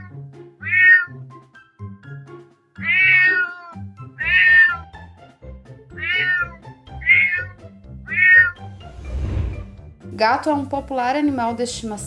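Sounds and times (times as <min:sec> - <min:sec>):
cat meowing: 0:00.0 - 0:01.2, 0:02.8 - 0:04.8, 0:06.0 - 0:08.6
soft background music: 0:00.0 - 0:12.0.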